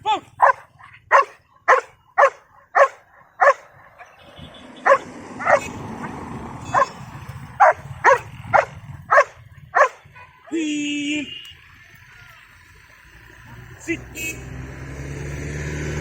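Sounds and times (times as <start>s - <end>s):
dog barking: 0.4s - 4.2s, 4.8s - 7.0s, 7.6s - 10.1s.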